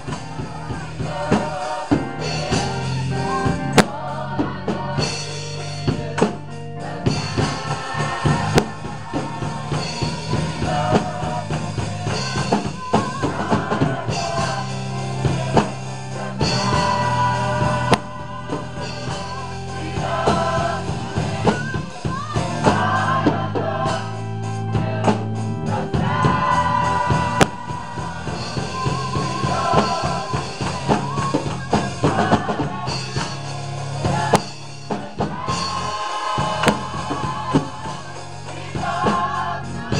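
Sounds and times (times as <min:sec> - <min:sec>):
drum kit and bass band: 0:00.0 - 0:39.9
gospel choir singing: 0:00.0 - 0:39.9.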